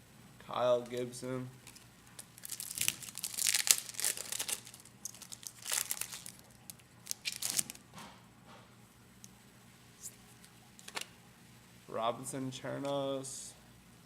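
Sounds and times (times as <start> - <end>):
foil wrapper crinkling and tearing: 1.6 - 7.8.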